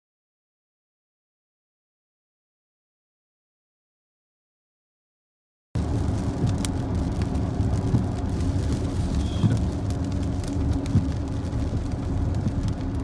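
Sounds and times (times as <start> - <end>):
heavy rain falling: 5.8 - 13.0
vehicle engine rumble: 5.8 - 13.0.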